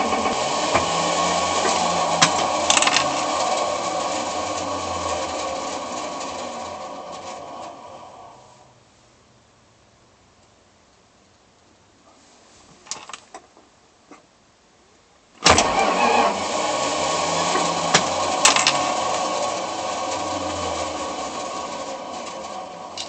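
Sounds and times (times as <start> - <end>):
starter motor whirring harshly: 0.0 - 8.6, 15.4 - 23.0.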